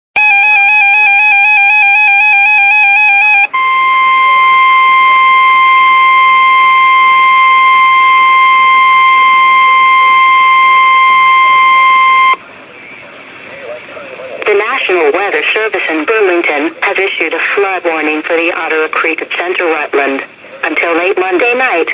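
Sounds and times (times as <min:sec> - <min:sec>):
steady high alarm tone: 0:00.2 - 0:12.4.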